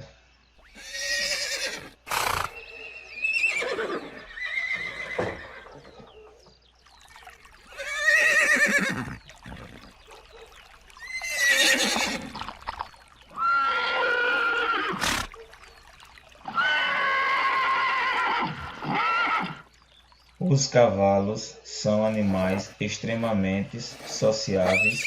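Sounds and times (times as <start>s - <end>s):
horses whinnying: 0.6s - 6.2s, 7.0s - 15.5s, 16.1s - 19.8s, 24.0s - 25.0s.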